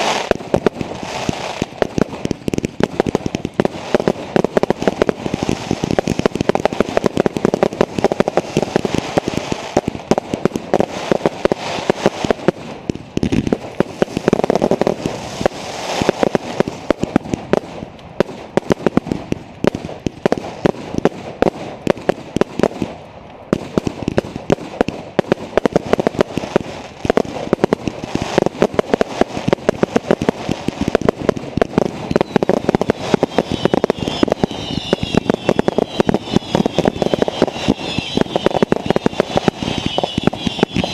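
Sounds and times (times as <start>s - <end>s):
firework whistles: 0.0s - 10.1s, 10.8s - 17.0s, 31.8s - 40.9s
fireworks bangs and crackles: 0.0s - 40.9s.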